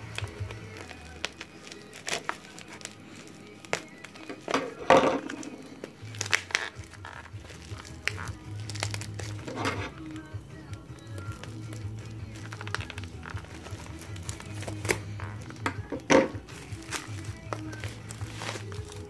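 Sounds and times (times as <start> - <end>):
background music: 0.0 - 19.0
packaging crinkling and clicking: 0.0 - 19.0.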